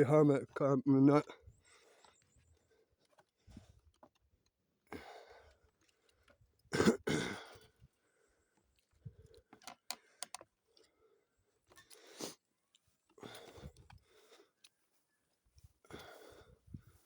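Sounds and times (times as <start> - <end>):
man breathing: 4.9 - 5.6, 13.2 - 14.6, 15.8 - 17.0.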